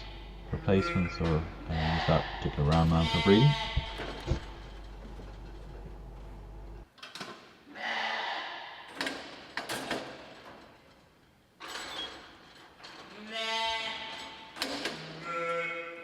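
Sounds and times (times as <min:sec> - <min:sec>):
sheep bleating: 0:00.0 - 0:04.5, 0:07.7 - 0:08.7, 0:13.2 - 0:14.1, 0:15.2 - 0:16.0.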